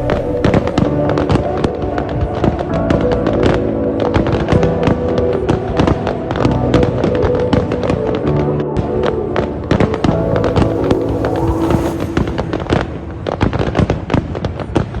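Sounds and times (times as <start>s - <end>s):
background music of held notes: 0.0s - 14.5s.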